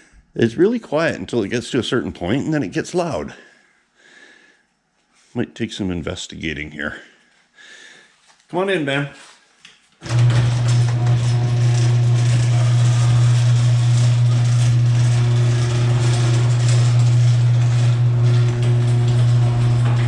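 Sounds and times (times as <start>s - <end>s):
garage door opener motor hum: 10.0s - 20.0s
garage door rattling and grinding: 10.0s - 20.0s.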